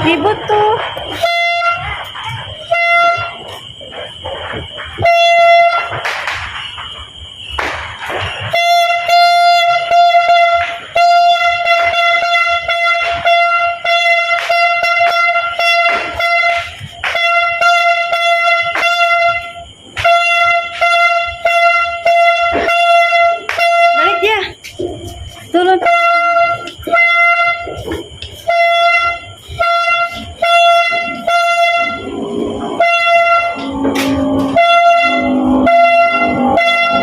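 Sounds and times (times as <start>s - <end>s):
horn blowing long blasts: 0.0s - 37.0s
sharp pops and cracks: 5.8s - 8.6s.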